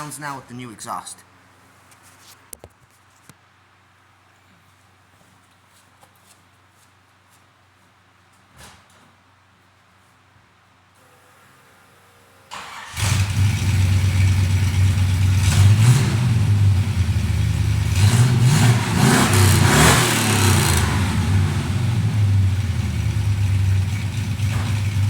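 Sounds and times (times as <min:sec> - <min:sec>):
engine cranking: 0:12.5 - 0:25.0
pickup truck engine revving and idling: 0:12.7 - 0:25.0.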